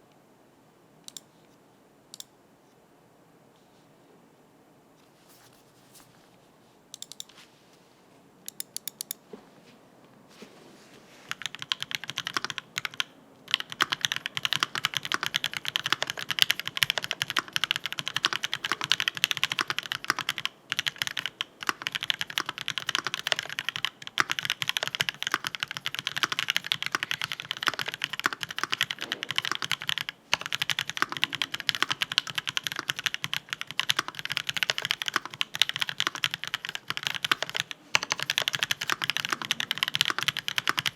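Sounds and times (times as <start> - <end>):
mechanical keyboard typing: 1.1 - 1.3, 7.0 - 7.3, 8.5 - 9.2, 11.3 - 40.9.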